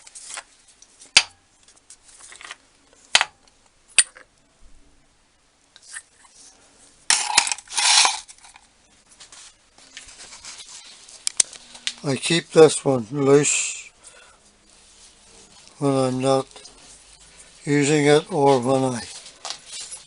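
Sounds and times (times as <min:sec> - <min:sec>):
metal blocks clinking: 0:07.1 - 0:08.6
metal rattling and scraping: 0:07.1 - 0:08.7.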